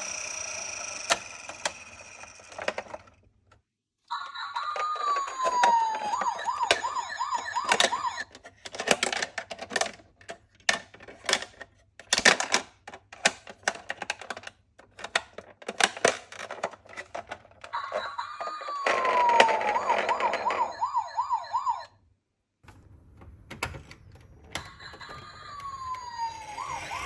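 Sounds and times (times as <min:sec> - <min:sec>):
toy cars clicking and clattering: 0:00.0 - 0:03.2, 0:04.2 - 0:21.8
ambulance siren warble: 0:04.1 - 0:08.3, 0:17.7 - 0:22.0, 0:24.3 - 0:27.0.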